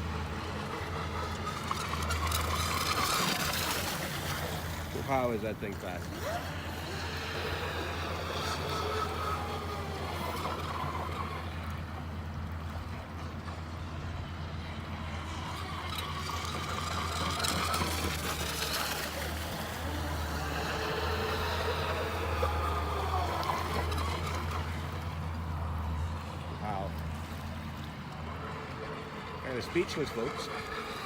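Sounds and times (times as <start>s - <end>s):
electric motor whining: 0.0s - 13.4s, 14.5s - 31.0s.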